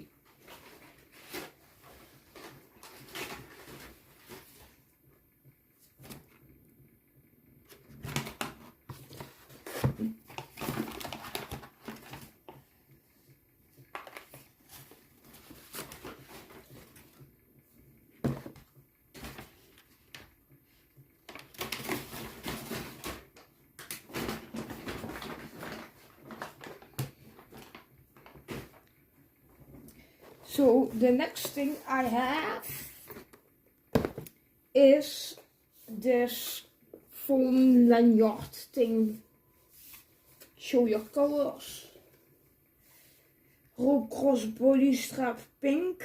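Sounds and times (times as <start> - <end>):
packaging rustling and crinkling: 7.7 - 12.6, 13.9 - 17.2, 21.3 - 28.9.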